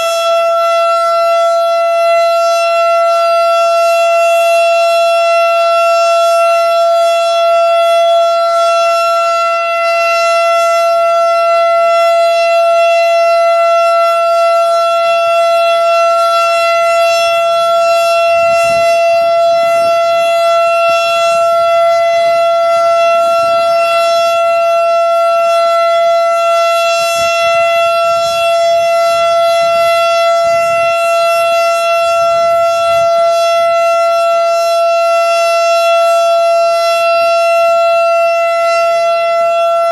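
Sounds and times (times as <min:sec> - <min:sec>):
warning siren steady tone: 0:00.0 - 0:39.9.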